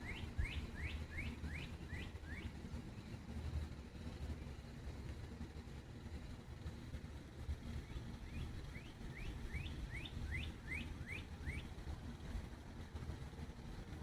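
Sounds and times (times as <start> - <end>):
bird singing: 0.0 - 2.5, 7.8 - 11.7.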